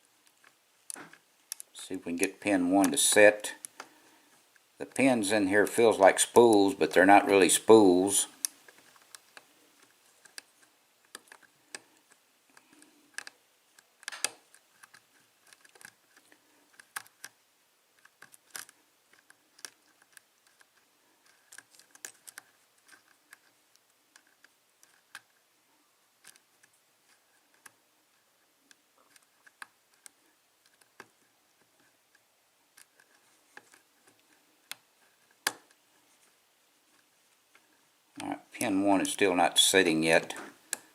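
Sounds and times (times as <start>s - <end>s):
lock pick clicking and scraping: 8.4s - 17.4s, 18.0s - 25.4s.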